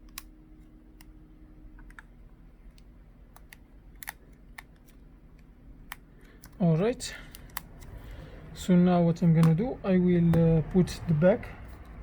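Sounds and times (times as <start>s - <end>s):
small clicks of tool and plastic: 7.3s - 7.7s.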